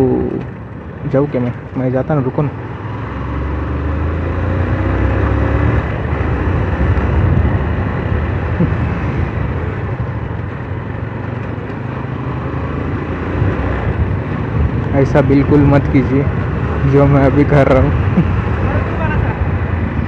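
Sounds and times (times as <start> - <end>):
wind noise on microphone: 5.6 - 10.8, 13.0 - 20.0.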